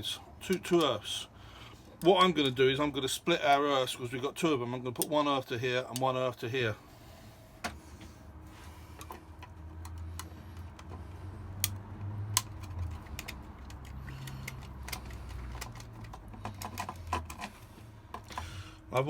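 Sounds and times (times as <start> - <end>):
small clicks and taps of wiring work: 9.0 - 18.4.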